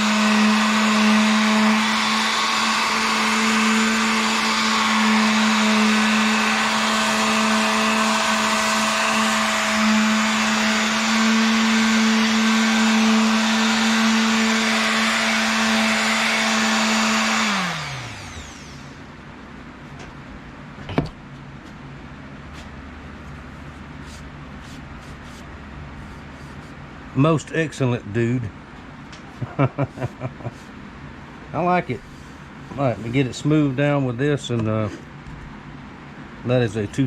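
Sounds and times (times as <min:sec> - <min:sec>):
electric sander humming: 0:00.0 - 0:19.0
motor winding down: 0:00.0 - 0:19.1.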